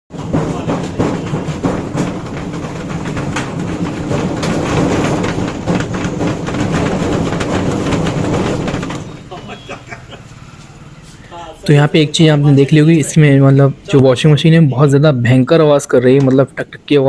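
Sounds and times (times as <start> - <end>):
drum knocking and clattering: 0.1 - 10.6
washing machine spinning: 0.1 - 14.6.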